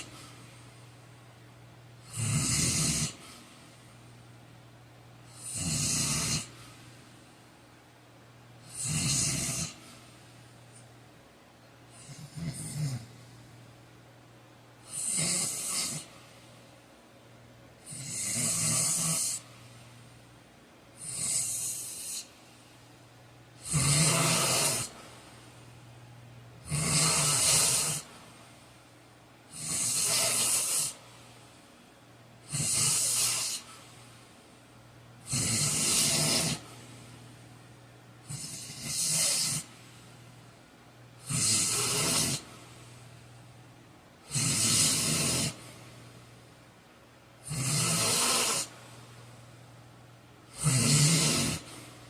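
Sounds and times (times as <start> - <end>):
man snoring loudly: 2.0 - 3.2, 5.3 - 6.6, 8.7 - 9.8, 11.9 - 13.1, 14.9 - 16.1, 17.8 - 19.4, 21.0 - 22.3, 23.6 - 25.0, 26.6 - 28.1, 29.5 - 31.0, 32.4 - 33.7, 35.2 - 36.7, 38.3 - 39.7, 41.2 - 42.4, 44.3 - 45.6, 47.4 - 48.7, 50.5 - 51.7.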